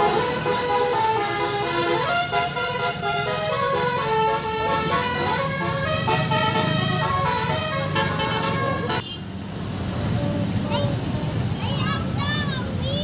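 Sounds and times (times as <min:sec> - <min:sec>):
multi-tone musical bus horn: 0:00.0 - 0:09.3
bus engine running: 0:00.0 - 0:13.0.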